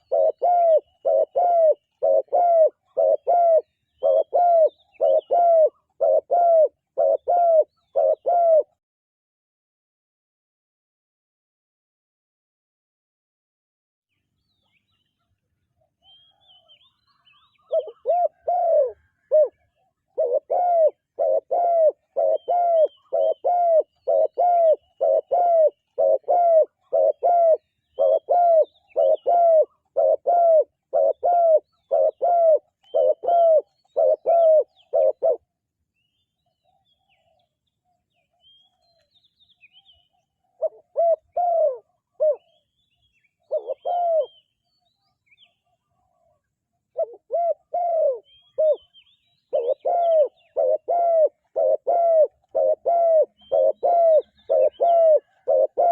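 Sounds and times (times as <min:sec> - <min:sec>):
small birds chirping: 0:00.0 - 0:08.3, 0:14.1 - 0:55.9
dove cooing: 0:00.0 - 0:08.8, 0:16.2 - 0:35.6, 0:40.0 - 0:42.6, 0:43.4 - 0:44.4, 0:45.4 - 0:55.9.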